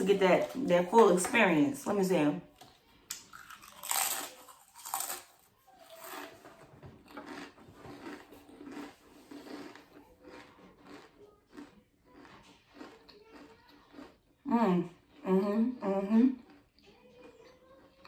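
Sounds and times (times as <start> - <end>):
crisps crunching in chewing: 3.1 - 14.3, 16.4 - 18.0
loud bites into crisps: 3.3 - 5.4.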